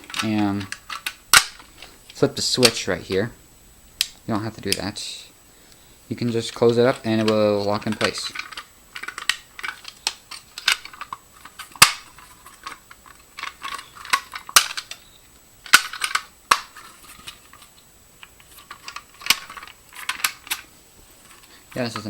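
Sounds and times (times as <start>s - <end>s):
plastic and metal clicks and snaps: 4.0s - 4.9s, 6.9s - 17.6s, 18.2s - 20.7s.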